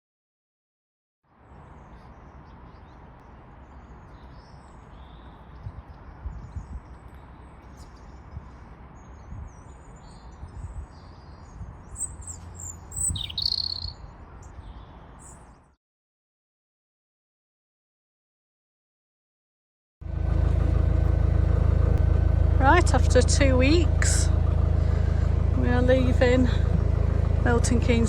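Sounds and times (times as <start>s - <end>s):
small birds chirping: 1.5s - 15.8s
loud sweeping bird call: 3.7s - 15.7s
low rumble: 20.0s - 28.0s.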